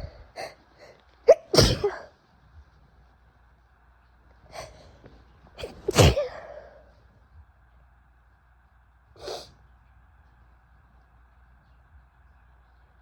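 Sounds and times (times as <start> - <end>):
woman sneezing: 1.3 - 2.0, 5.6 - 6.6.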